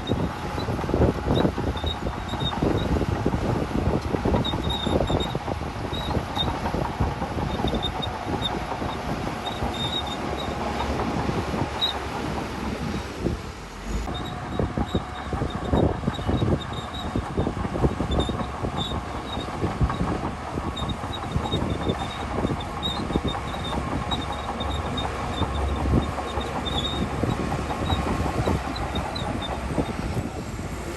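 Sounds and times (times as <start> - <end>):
diesel engine running: 0.0 - 30.9
steel tracks clanking: 0.0 - 30.9
faint high squeaks: 7.6 - 11.0.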